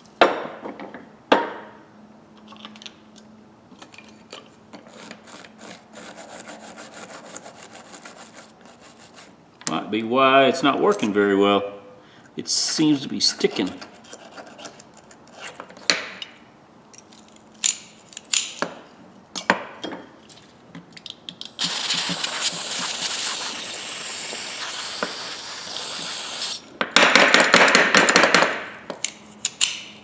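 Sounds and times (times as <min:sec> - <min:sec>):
rough spray-like noise: 0:04.9 - 0:09.4, 0:21.4 - 0:26.7
aerosol spray hiss: 0:21.5 - 0:26.6.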